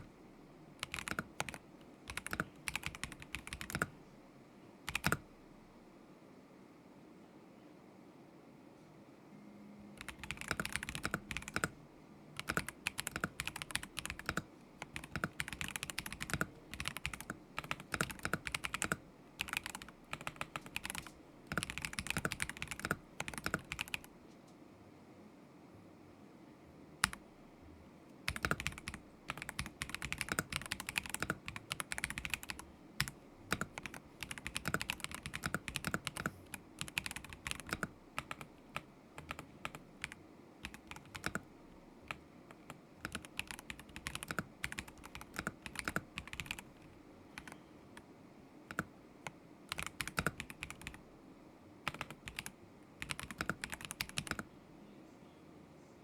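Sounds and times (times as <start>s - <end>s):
mechanical keyboard typing: 0.8s - 4.0s, 4.9s - 5.3s, 10.0s - 11.8s, 12.4s - 24.1s, 27.0s - 27.2s, 28.3s - 41.5s, 42.1s - 48.1s, 48.7s - 51.0s, 51.8s - 54.5s.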